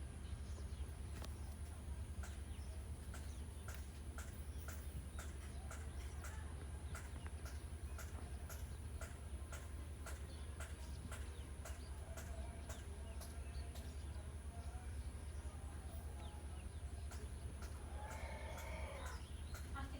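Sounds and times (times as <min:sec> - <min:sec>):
hens calling: 0:17.1 - 0:19.7.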